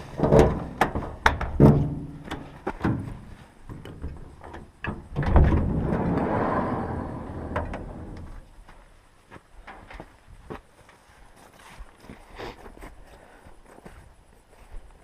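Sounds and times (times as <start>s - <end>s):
sharp knocks and clunks: 0.0s - 6.3s.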